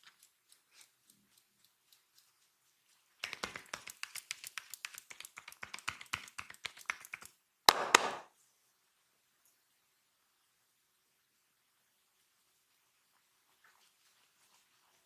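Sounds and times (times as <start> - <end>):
hands tapping on body: 3.2 - 8.3
loud sharp slaps: 7.7 - 8.3.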